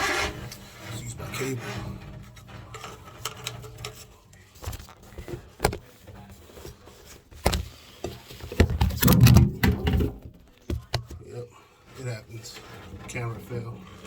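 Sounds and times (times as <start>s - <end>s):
drain cable knocks and clanks: 0.2s - 6.1s, 7.4s - 11.2s.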